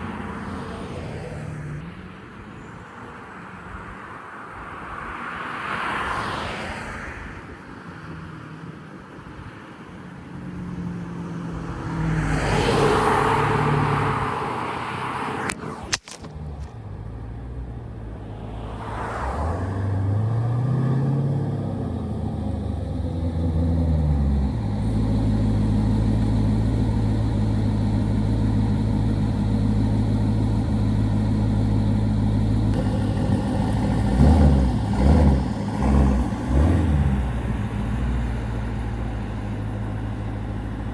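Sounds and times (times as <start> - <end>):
car engine revving and idling: 11.6 - 40.9.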